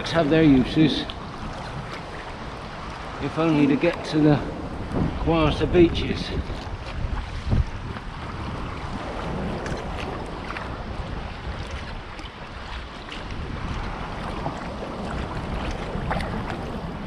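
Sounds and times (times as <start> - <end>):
water lapping around kayak: 0.0 - 17.0
wind buffeting microphone: 0.0 - 17.0
small splashes: 8.9 - 17.0.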